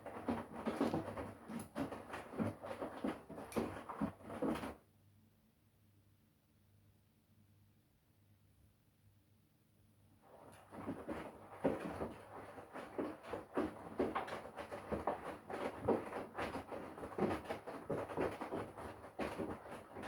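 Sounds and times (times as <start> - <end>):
water sloshing in washing machine: 0.0 - 4.8, 10.2 - 20.0.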